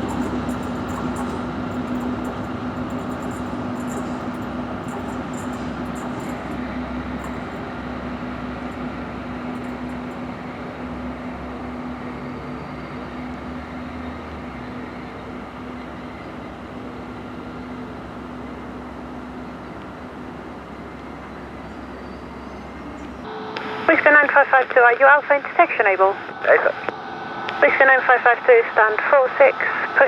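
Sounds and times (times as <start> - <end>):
vehicle engine drone: 0.0 - 25.2.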